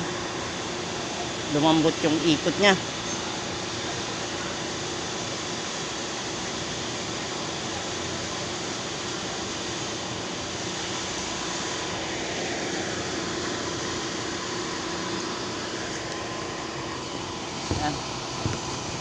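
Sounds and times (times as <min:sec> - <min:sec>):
fan whirring: 0:00.0 - 0:19.0.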